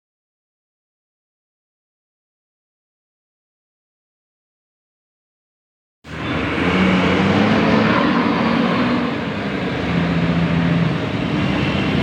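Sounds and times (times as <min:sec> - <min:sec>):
bus passing: 0:06.1 - 0:12.0.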